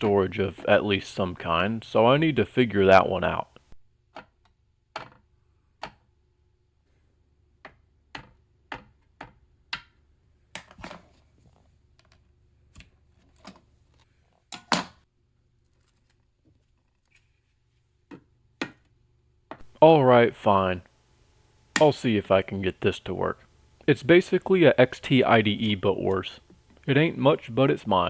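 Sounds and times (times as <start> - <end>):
faint steady hum: 0.0 - 3.8, 18.8 - 28.0.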